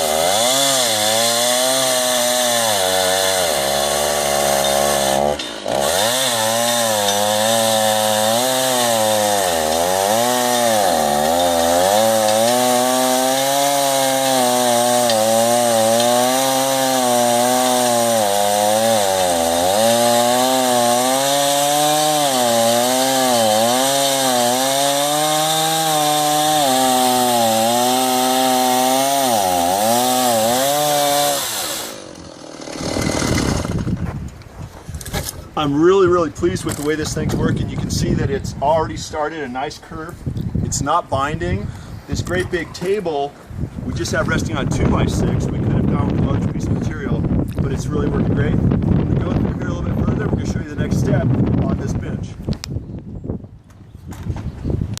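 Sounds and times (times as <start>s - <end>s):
chainsaw ripping through log: 0.0s - 34.3s.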